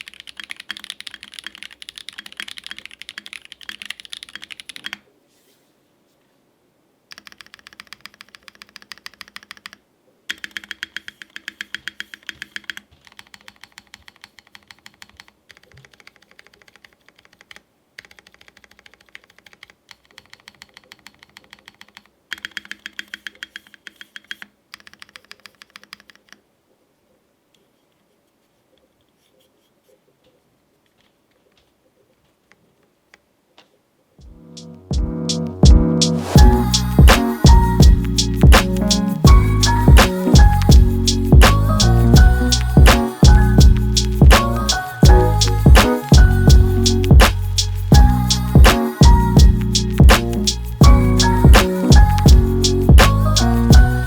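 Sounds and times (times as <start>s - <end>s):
fast mechanical keyboard typing: 0.0s - 5.0s, 7.1s - 26.4s.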